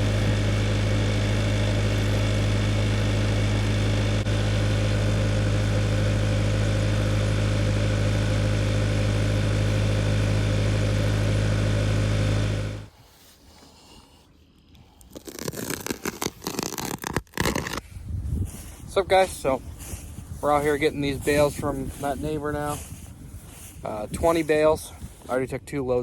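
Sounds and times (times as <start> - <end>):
engine running steadily: 0.0 - 12.9.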